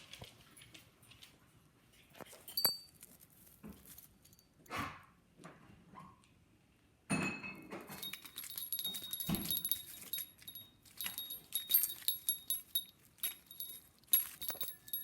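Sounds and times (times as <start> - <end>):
small metal pieces jingling: 7.9 - 15.0.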